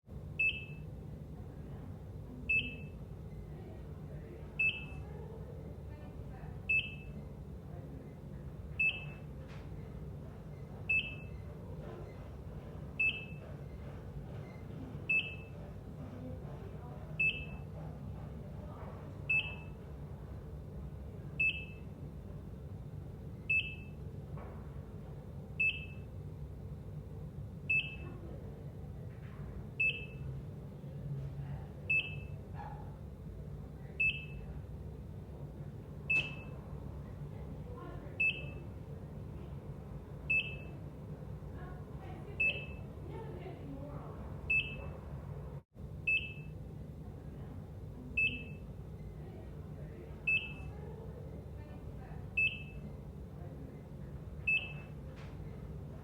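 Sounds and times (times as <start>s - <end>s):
heart monitor beeping: 0.4s - 1.0s, 2.3s - 3.5s, 4.6s - 5.0s, 6.6s - 7.4s, 8.6s - 20.4s, 21.4s - 22.0s, 23.3s - 24.1s, 25.0s - 26.2s, 27.7s - 28.2s, 29.7s - 30.4s, 31.8s - 32.9s, 34.0s - 34.6s, 35.9s - 36.8s, 38.2s - 38.7s, 40.2s - 40.9s, 42.4s - 43.0s, 44.5s - 45.0s, 46.1s - 46.6s, 48.1s - 49.1s, 50.2s - 50.7s, 52.3s - 53.0s, 54.3s - 55.4s.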